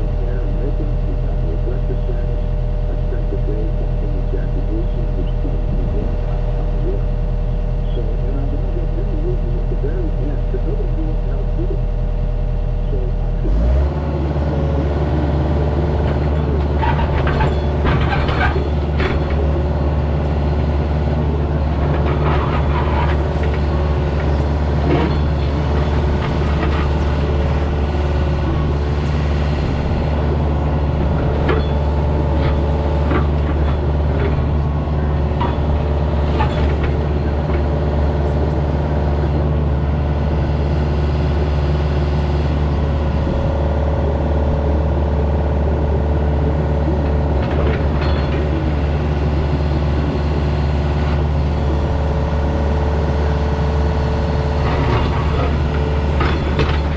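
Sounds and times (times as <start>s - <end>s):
heavy machine engine running: 0.0s - 56.9s
clanks and knocks: 16.0s - 37.8s, 47.0s - 49.4s, 54.6s - 56.9s.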